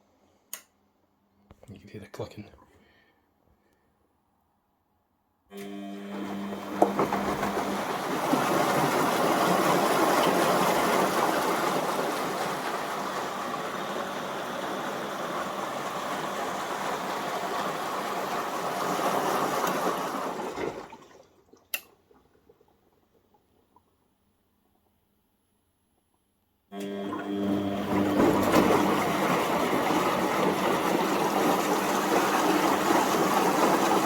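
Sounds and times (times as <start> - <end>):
water rushing into washing machine: 5.5 - 23.9, 26.8 - 34.0.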